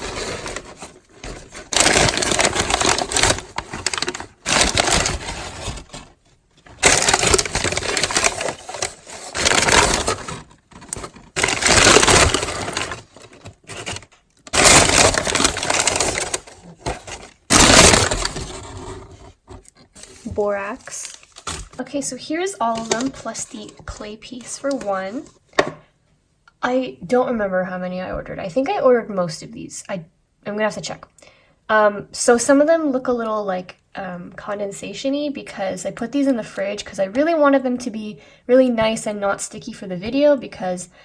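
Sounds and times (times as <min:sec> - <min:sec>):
packaging crinkling: 0:00.0 - 0:21.8.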